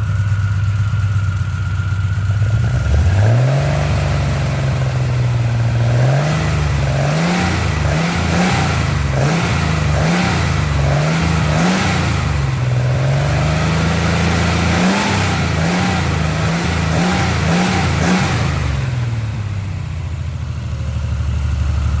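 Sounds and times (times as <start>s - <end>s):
car engine revving: 2.5s - 19.8s.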